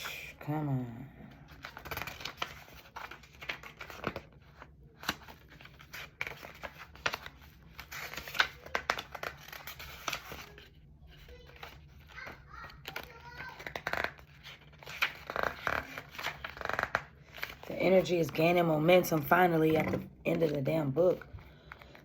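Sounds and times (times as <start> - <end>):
book pages flipping: 1.5 - 22.0.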